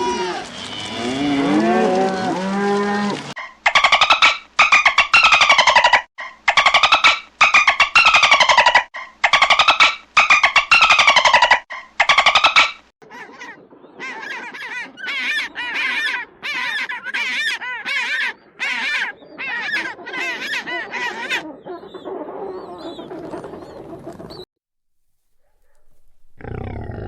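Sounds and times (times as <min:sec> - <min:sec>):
bird calling: 0:03.4 - 0:24.4.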